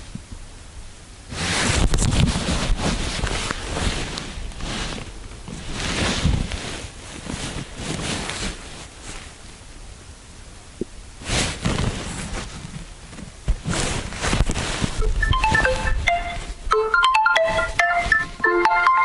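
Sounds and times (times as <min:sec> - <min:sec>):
wind noise on microphone: 0:00.0 - 0:09.6, 0:10.8 - 0:18.5
rustling on microphone: 0:01.3 - 0:09.8, 0:11.2 - 0:16.8.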